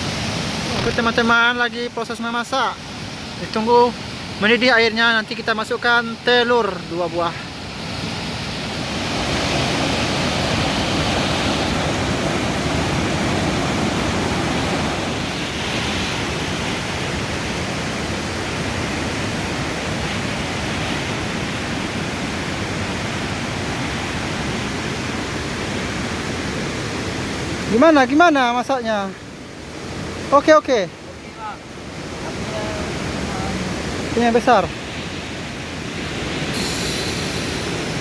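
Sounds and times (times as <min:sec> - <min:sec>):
river rushing: 0:00.0 - 0:38.0.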